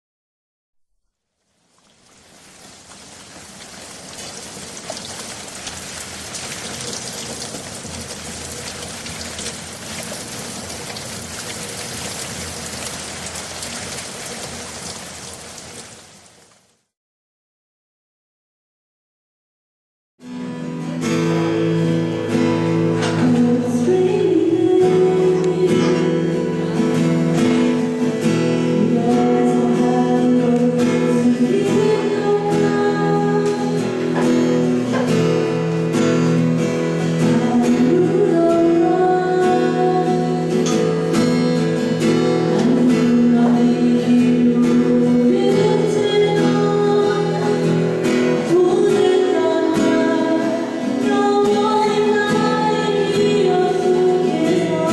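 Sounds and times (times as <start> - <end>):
acoustic guitar song: 20.2 - 54.9.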